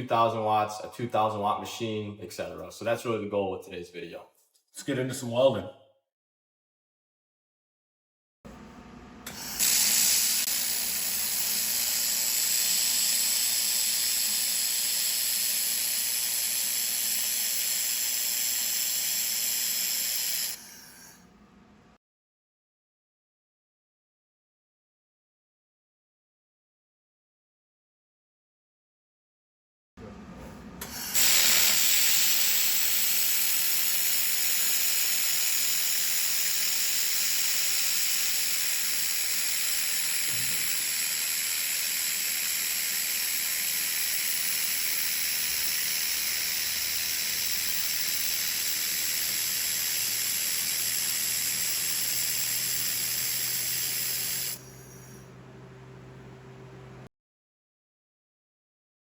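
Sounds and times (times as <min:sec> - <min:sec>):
laser welder hissing: 0:09.3 - 0:21.1, 0:30.8 - 0:55.3.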